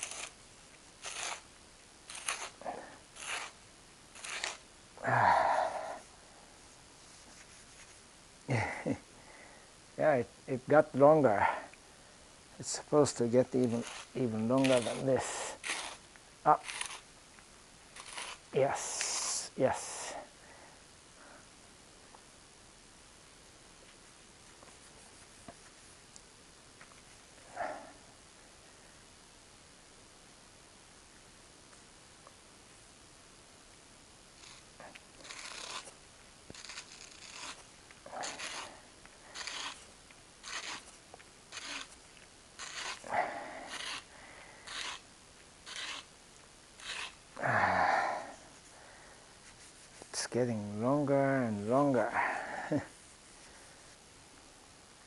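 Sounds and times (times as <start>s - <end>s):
tape pulled off roll rasping: 0.0s - 0.4s, 1.0s - 1.5s, 2.1s - 4.6s, 13.6s - 17.1s, 18.0s - 19.2s, 34.4s - 43.1s, 43.7s - 46.1s, 46.8s - 47.2s
faint steady hiss: 0.0s - 55.0s.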